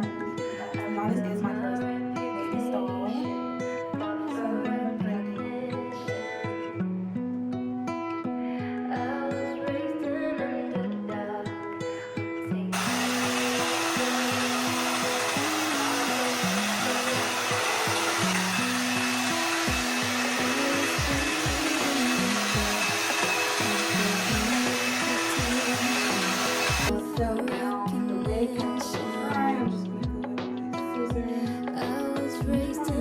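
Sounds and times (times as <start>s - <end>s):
background music: 0.0s - 33.0s
hair dryer blowing: 12.8s - 27.0s.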